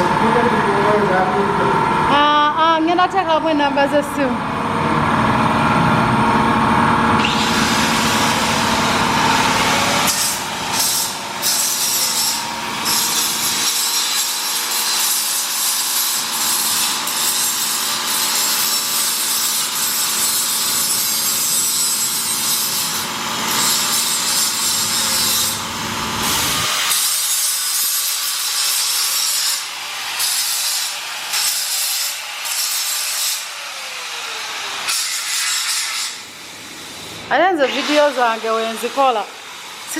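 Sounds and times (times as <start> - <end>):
abrasive tool rasping on metal: 10.0 - 25.6, 26.8 - 33.6, 34.8 - 36.3.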